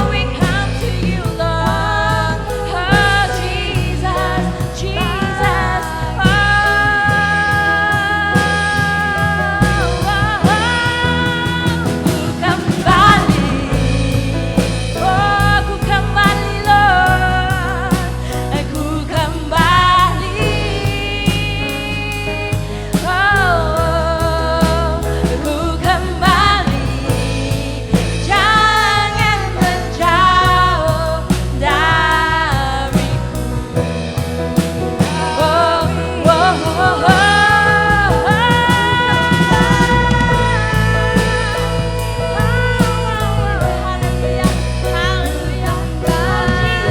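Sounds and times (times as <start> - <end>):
worship song with band: 0.0 - 46.9.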